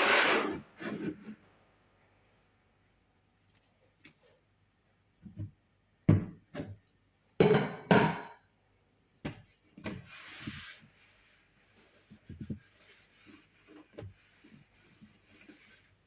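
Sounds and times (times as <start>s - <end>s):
kitchen equipment knocks and clunks: 5.3s - 6.8s, 7.4s - 8.4s.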